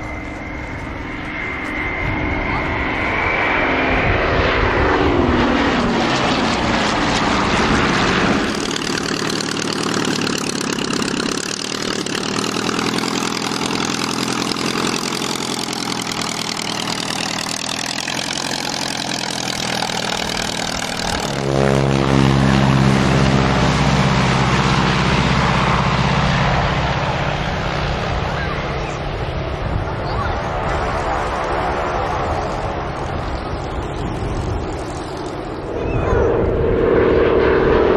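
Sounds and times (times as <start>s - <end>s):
propeller aircraft engine: 0.0s - 37.9s
deep engine idling: 8.3s - 29.0s.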